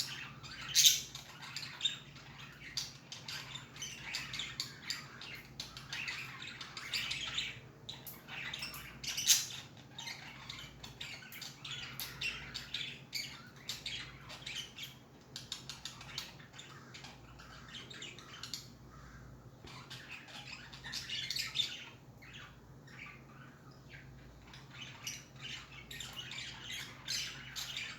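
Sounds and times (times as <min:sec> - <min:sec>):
budgies chirping and chattering: 0:00.0 - 0:27.9.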